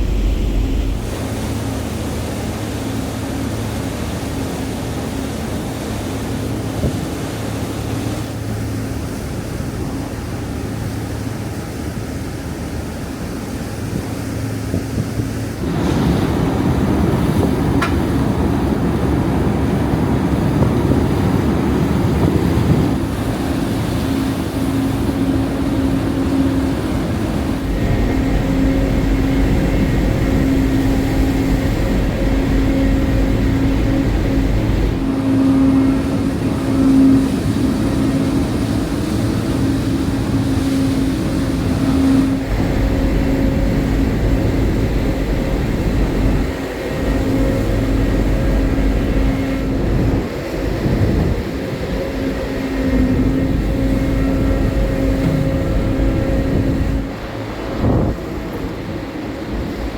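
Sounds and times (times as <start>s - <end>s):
wind noise: 0.0s - 1.9s, 13.7s - 59.9s
deep rumble: 0.0s - 2.5s, 15.6s - 59.9s
ferry engines droning: 0.0s - 59.9s
rushing water: 0.0s - 59.9s.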